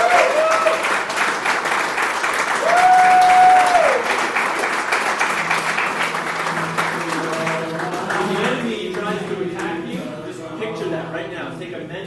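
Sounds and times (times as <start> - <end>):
long cheer: 0.0 - 8.5
men applauding: 0.0 - 9.9.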